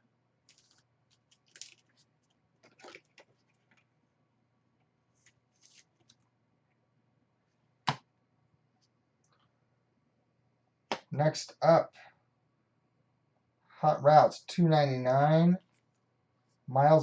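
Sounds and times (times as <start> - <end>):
trading cards rustling and sliding: 0.5 - 3.8, 5.2 - 6.2.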